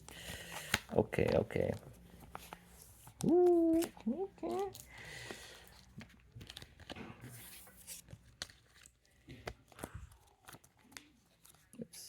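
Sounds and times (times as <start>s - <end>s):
cards clicking as handled: 0.0s - 11.8s
foil wrapper crinkling and tearing: 0.4s - 11.8s.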